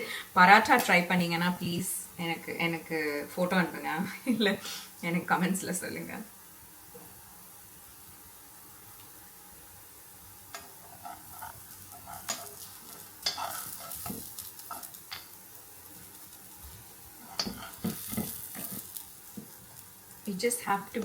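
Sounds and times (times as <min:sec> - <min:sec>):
patties sizzling in a pan: 0:00.0 - 0:21.0
spoons scraping a pan: 0:10.6 - 0:15.4, 0:17.2 - 0:19.1.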